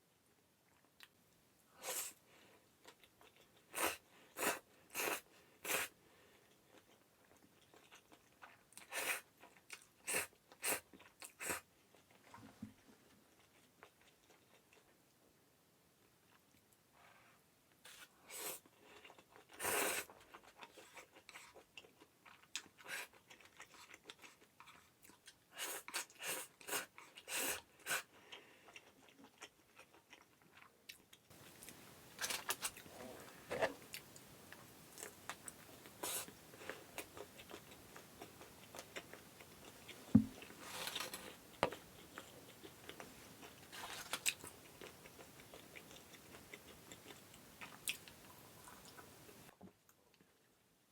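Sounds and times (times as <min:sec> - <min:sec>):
faint steady hiss: 0:00.0 - 0:29.7, 0:30.6 - 0:50.9
dull knock: 0:40.2 - 0:40.4.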